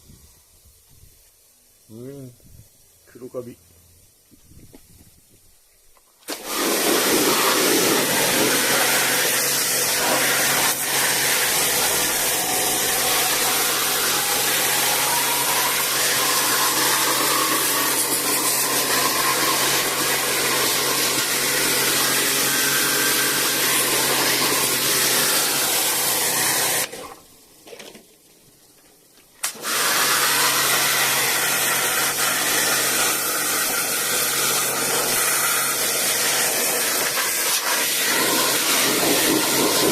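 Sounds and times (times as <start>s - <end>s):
water spray hissing: 6.2s - 27.0s, 29.4s - 39.9s
pressure washer motor hum: 6.3s - 27.1s, 29.4s - 39.9s.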